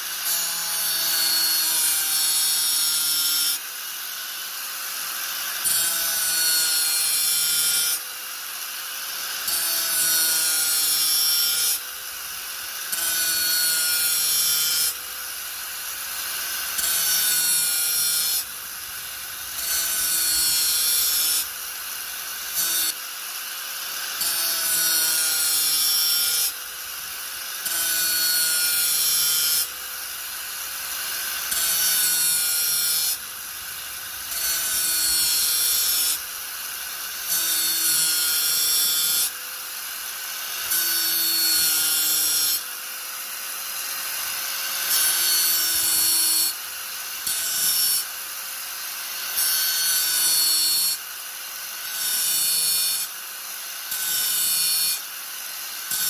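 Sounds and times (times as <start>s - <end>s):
angle grinder grinding: 9.1s - 42.7s.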